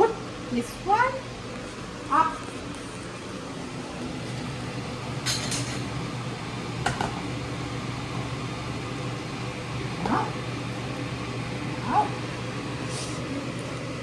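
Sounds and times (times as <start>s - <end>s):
steady low hum: 0.0s - 14.0s
dishes clinking: 5.2s - 6.0s.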